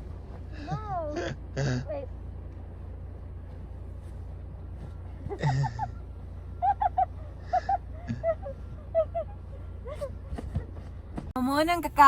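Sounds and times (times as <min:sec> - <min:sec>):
breathy laughter: 0:05.3 - 0:06.0, 0:06.6 - 0:10.3.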